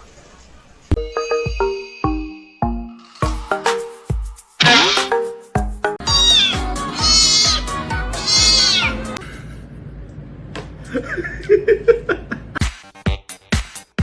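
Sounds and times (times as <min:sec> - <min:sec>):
background music with beat: 0:01.0 - 0:08.1, 0:12.6 - 0:14.0
cat meowing: 0:04.6 - 0:05.1, 0:06.0 - 0:09.2.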